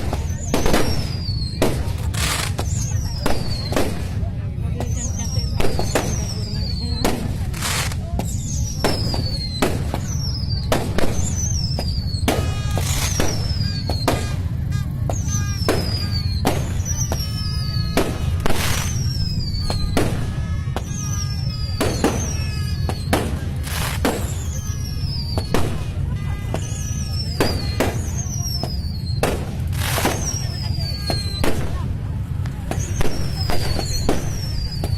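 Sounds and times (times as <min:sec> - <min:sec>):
fireworks bangs: 0:00.0 - 0:34.9
falling whistle: 0:08.2 - 0:23.3, 0:24.0 - 0:25.6, 0:26.2 - 0:29.2, 0:30.0 - 0:31.4.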